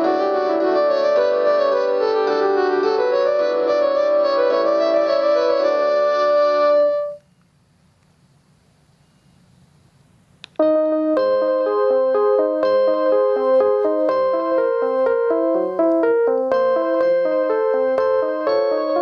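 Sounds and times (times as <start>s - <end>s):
piano-like phone ringtones: 0.0s - 7.2s, 10.6s - 19.0s.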